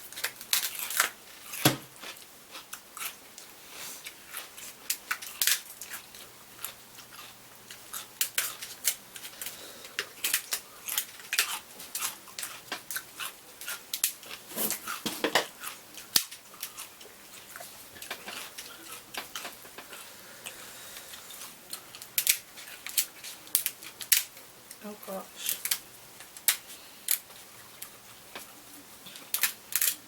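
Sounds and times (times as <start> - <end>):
shells cracking: 29.3 - 30.0.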